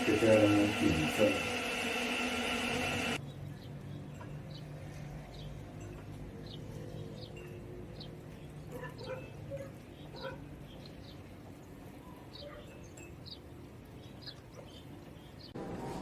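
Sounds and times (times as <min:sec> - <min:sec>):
small birds chirping: 0:03.2 - 0:15.6.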